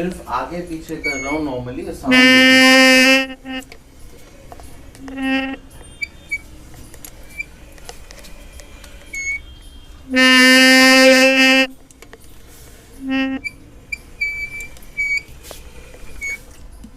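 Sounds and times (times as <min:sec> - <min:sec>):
honking disc brake squeal: 0:00.9 - 0:03.6, 0:05.1 - 0:06.6, 0:09.0 - 0:11.7, 0:13.0 - 0:15.4, 0:16.0 - 0:16.5
faint high chirps: 0:01.0 - 0:01.5.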